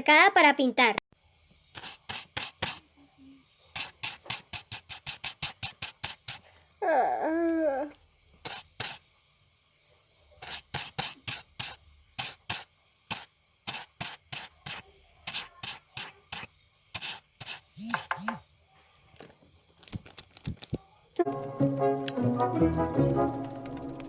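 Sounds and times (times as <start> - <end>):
sharp scraping strokes: 1.7 - 2.9, 3.8 - 6.5, 8.4 - 9.0, 10.4 - 18.4.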